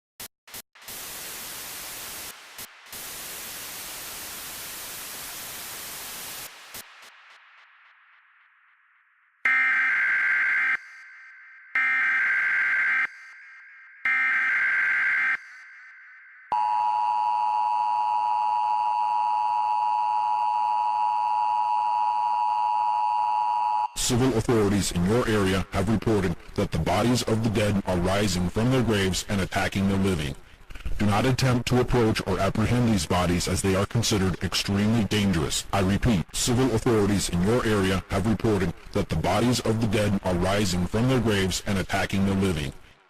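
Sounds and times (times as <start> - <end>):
static hiss: 0.5 - 8.8.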